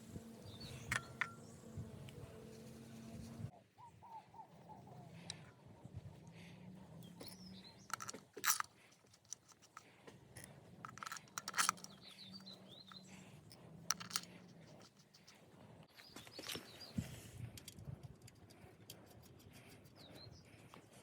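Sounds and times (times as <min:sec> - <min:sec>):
birds chirping: 0:00.0 - 0:05.6, 0:06.7 - 0:09.6, 0:10.4 - 0:17.1.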